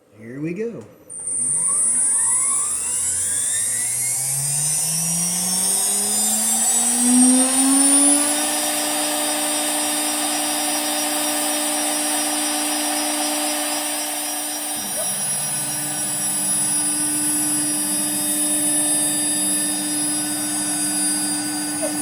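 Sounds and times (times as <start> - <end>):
router spindle whine: 1.0 - 22.0.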